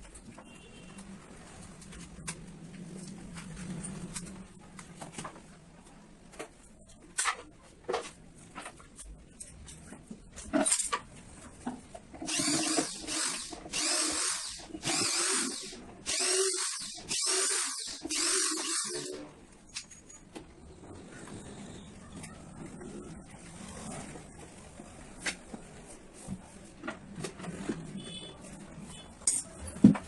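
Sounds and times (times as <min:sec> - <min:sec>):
electric drill bursts: 0:12.3 - 0:19.2.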